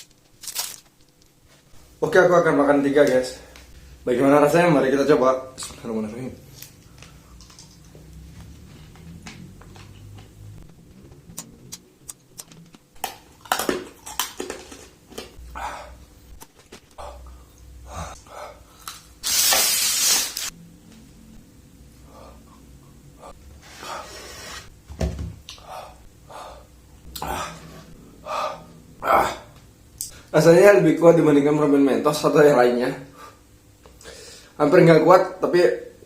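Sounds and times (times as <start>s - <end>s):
mouth clicks and smacks: 10.6s - 14.7s.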